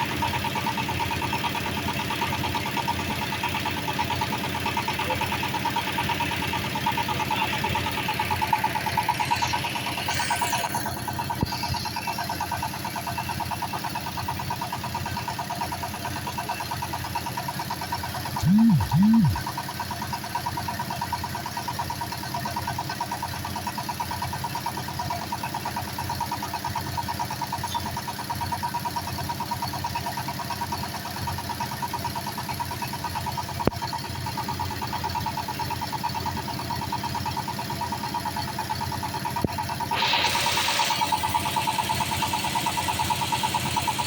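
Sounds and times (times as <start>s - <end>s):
drilling machine engine pulsing: 1.8s - 14.8s, 18.3s - 19.4s, 35.4s - 44.0s
loud noisy sound: 18.4s - 19.4s
loud rising and falling tones: 18.4s - 19.4s.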